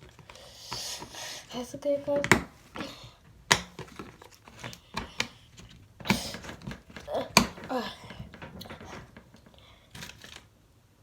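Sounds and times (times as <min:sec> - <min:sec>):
objects clicking and knocking: 0:02.0 - 0:10.5.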